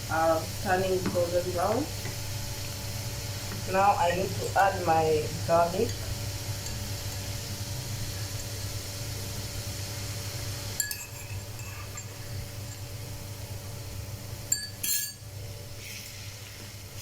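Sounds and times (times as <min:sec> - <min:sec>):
onions sizzling in hot oil: 0:00.0 - 0:17.0
utensil clinking against dish: 0:10.8 - 0:12.9, 0:14.5 - 0:15.2.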